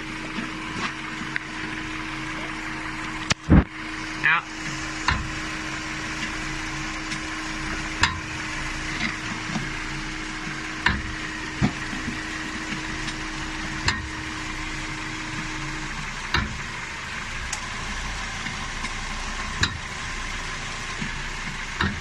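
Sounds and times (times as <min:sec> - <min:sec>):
car running with steady hum: 0:00.0 - 0:22.0
sharp clicks and knocks: 0:10.8 - 0:12.2, 0:21.0 - 0:22.0.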